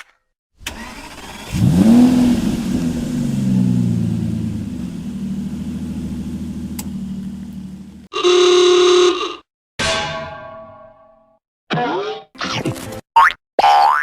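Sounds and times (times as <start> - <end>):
car engine revving: 0.7 - 8.1.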